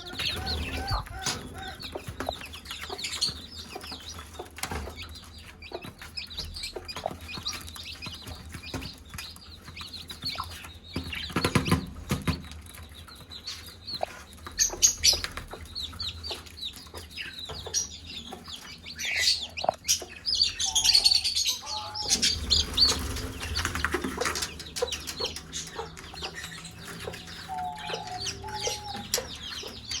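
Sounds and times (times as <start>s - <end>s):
hen clucking: 0.0s - 9.0s, 13.5s - 30.0s
chicks peeping: 0.0s - 30.0s.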